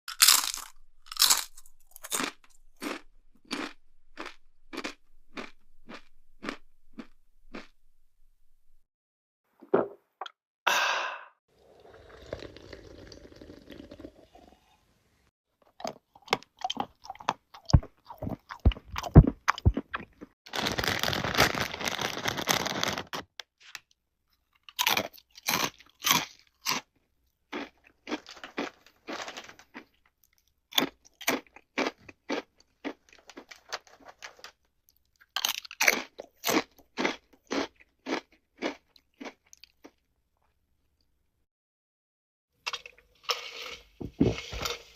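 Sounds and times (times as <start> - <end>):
crunchy biting and chewing: 0.1 - 7.8, 15.8 - 20.3, 24.6 - 26.9, 35.1 - 40.0.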